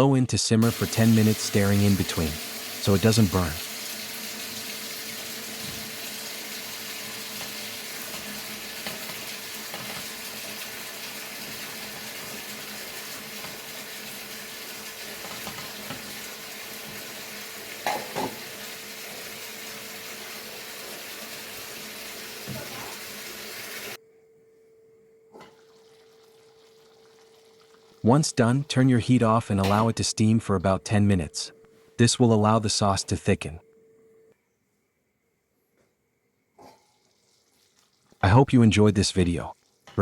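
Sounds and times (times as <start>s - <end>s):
pot of sauce bubbling: 25.4s - 28.0s, 36.8s - 38.3s.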